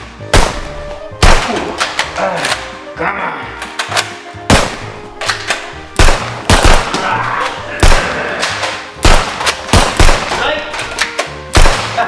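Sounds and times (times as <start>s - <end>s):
background music with bass line: 0.0s - 12.0s
gunshot-like bangs: 0.3s - 1.6s, 4.5s - 4.9s, 6.0s - 7.1s, 7.8s - 10.5s, 11.6s - 12.0s.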